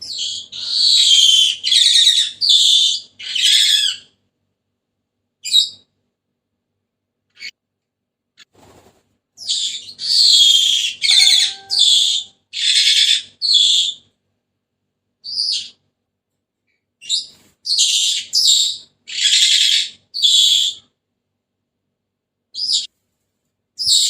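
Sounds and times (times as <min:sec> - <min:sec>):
parrot harsh rasping calls: 0:00.2 - 0:04.1, 0:10.0 - 0:13.6.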